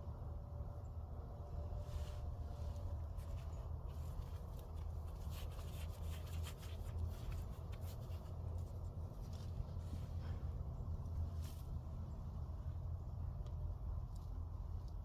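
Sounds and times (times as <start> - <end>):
steady low rumble: 0.0 - 15.0
soil scraping and crackling: 1.9 - 10.5.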